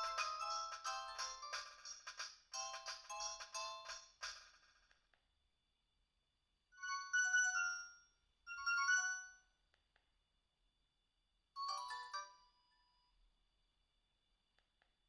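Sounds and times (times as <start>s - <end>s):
electronic ringtone melodies: 0.0s - 1.9s, 2.6s - 4.0s.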